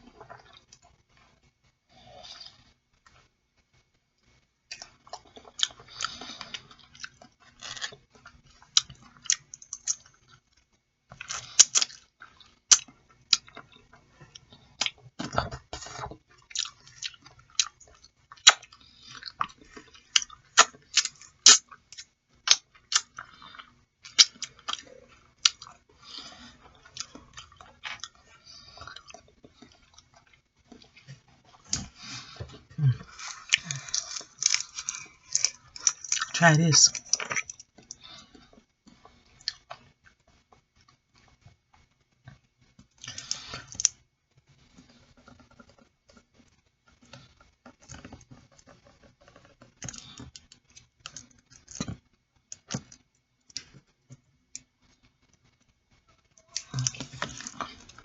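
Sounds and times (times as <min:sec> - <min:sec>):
person chewing: 0:00.0 - 0:01.0, 0:04.7 - 0:10.5, 0:11.1 - 0:41.4, 0:56.3 - 0:58.0.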